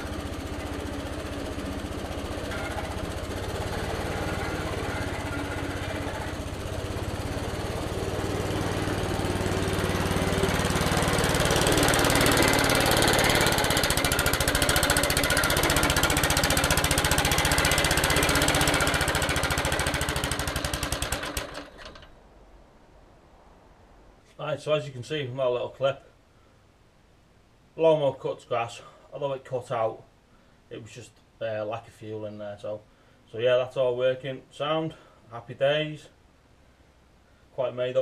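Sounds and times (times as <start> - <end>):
petrol lawnmower running: 0.0 - 22.1.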